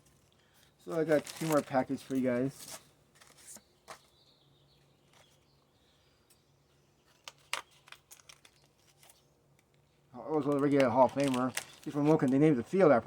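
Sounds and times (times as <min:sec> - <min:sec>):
foil wrappers crinkling: 0:00.0 - 0:04.1, 0:07.1 - 0:13.0.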